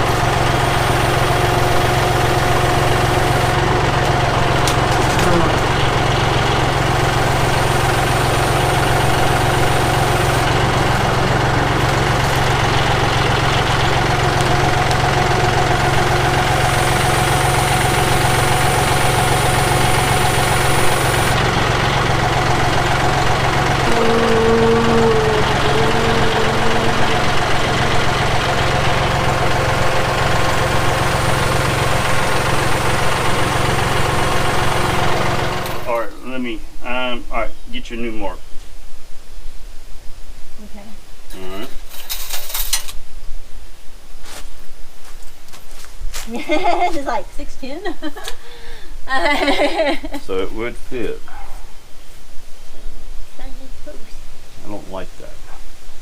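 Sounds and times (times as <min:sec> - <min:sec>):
tractor diesel engine running: 0:00.0 - 0:37.1, 0:46.3 - 0:51.5
high whine: 0:00.0 - 0:37.5.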